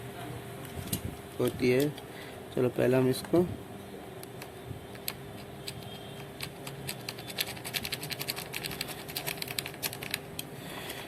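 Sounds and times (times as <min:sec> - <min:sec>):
hand tools clicking and scratching: 0:05.4 - 0:11.0.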